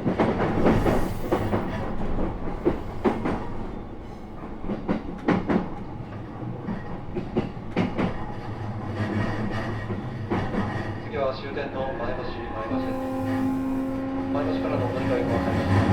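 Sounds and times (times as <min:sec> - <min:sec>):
low train rumble: 0:00.0 - 0:15.9
train wheels clicking over rail joints: 0:00.0 - 0:15.9.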